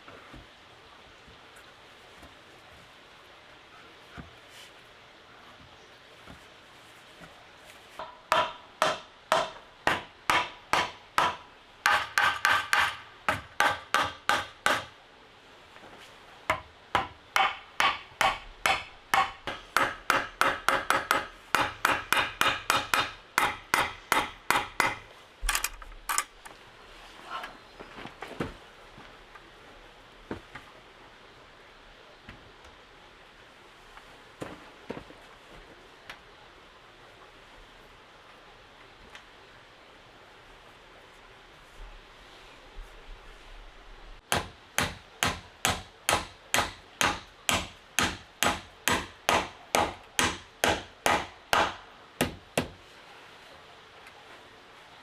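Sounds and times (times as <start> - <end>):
fast hammering blows: 8.0 - 14.9, 16.5 - 25.1, 44.3 - 52.8.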